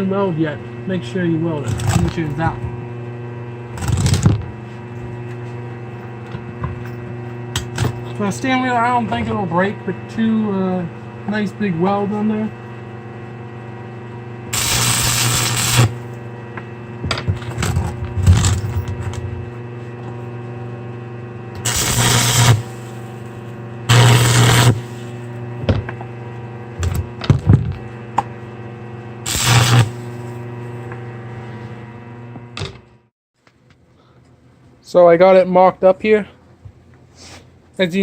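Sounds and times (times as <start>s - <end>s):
electric welder humming: 0.0s - 33.1s
welding crackle: 3.8s - 4.3s, 14.5s - 16.2s, 21.6s - 23.2s, 23.9s - 25.2s, 29.3s - 30.3s.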